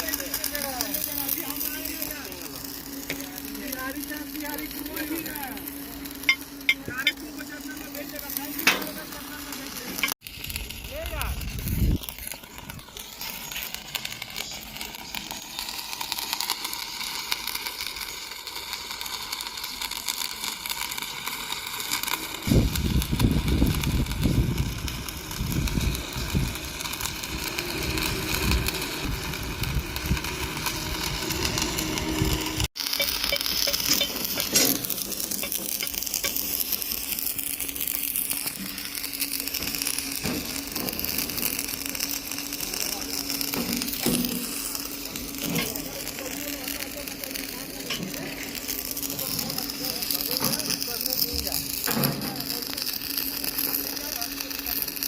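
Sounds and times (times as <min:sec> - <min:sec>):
welding arc crackling: 0:00.0 - 0:55.0
heavy low rumbling: 0:22.5 - 0:32.7.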